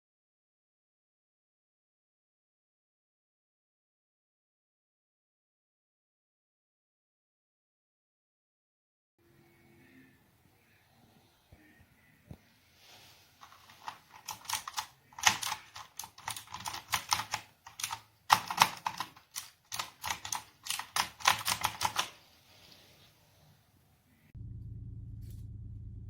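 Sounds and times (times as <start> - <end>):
clicky mechanical keyboard typing: 13.4 - 22.2.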